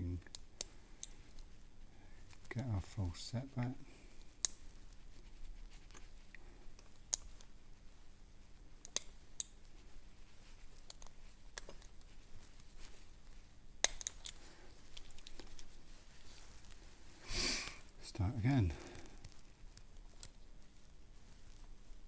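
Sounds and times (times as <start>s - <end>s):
small metallic lock clicks: 13.8s - 14.4s.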